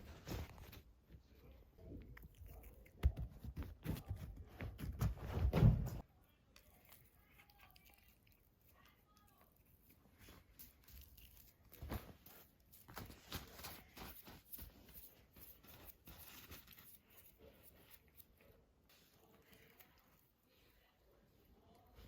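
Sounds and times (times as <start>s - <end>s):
cat chewing dried fish: 1.8s - 3.5s, 6.3s - 12.9s.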